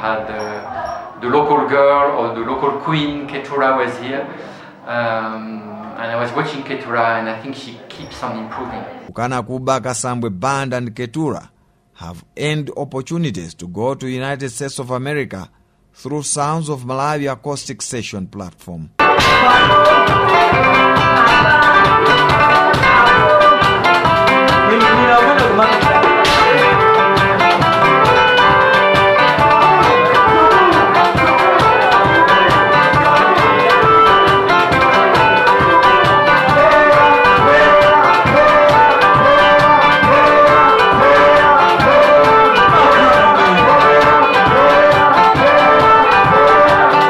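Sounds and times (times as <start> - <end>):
band music with drum beat: 19.0 - 47.0.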